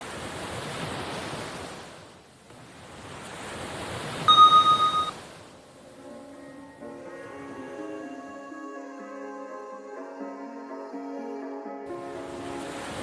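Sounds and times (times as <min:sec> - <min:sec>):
bell-like ding: 0:04.3 - 0:05.2.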